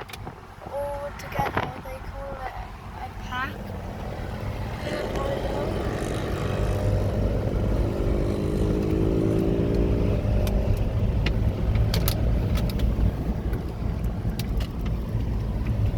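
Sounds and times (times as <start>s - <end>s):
steady low rumble: 0.2s - 15.9s
moped engines running: 0.6s - 15.9s
sharp clicks: 8.8s - 15.8s.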